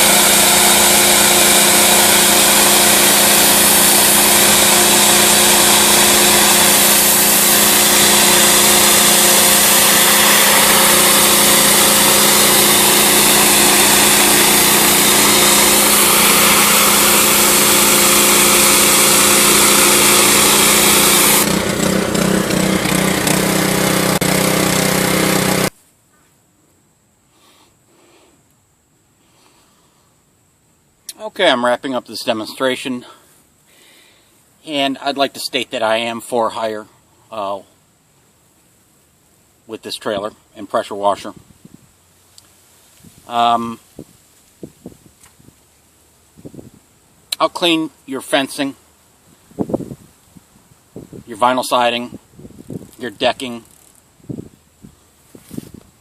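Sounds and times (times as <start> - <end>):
pressure washer engine running: 0.0 - 25.7
water jet hissing on siding: 0.0 - 25.8.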